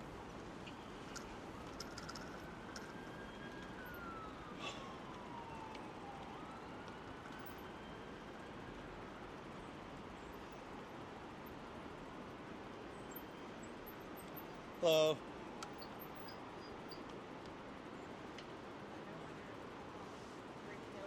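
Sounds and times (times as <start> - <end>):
distant siren wailing: 1.4 - 10.7.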